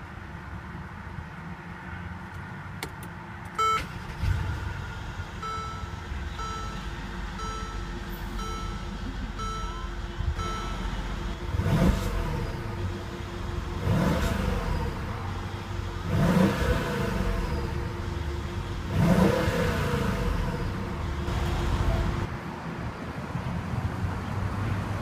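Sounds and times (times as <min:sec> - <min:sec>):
car engine rumbling: 0:00.0 - 0:22.4
loud beep: 0:03.6 - 0:21.9
car warning chime: 0:03.6 - 0:22.3
engine revving: 0:03.6 - 0:22.3.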